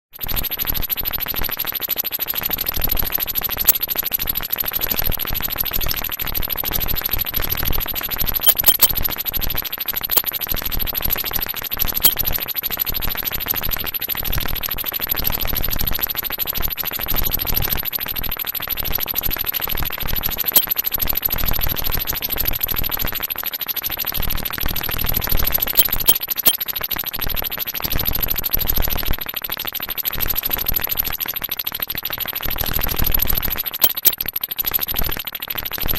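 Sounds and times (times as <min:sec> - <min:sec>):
sharp clicks: 0:08.4 - 0:08.9, 0:25.8 - 0:26.6, 0:33.8 - 0:34.2
throbbing electronic pecking: 0:08.4 - 0:08.9, 0:33.8 - 0:34.2.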